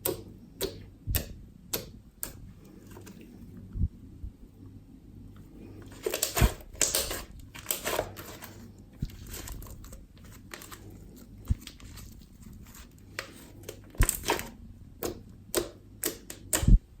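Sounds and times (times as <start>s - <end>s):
slime popping and crackling: 6.0s - 10.7s.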